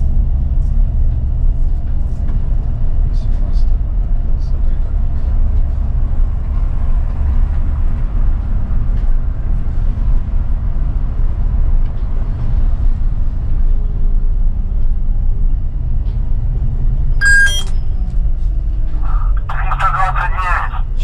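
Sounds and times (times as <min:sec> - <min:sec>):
bus engine and road rumble: 0:00.0 - 0:21.0
electronic chirp: 0:17.2 - 0:17.8.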